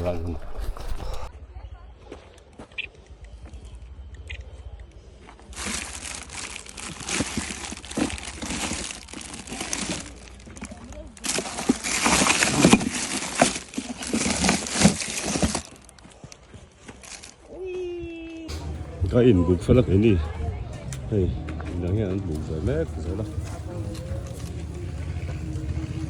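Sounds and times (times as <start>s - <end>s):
rustling and crinkling: 0.0s - 1.3s, 5.2s - 18.7s, 20.4s - 26.0s.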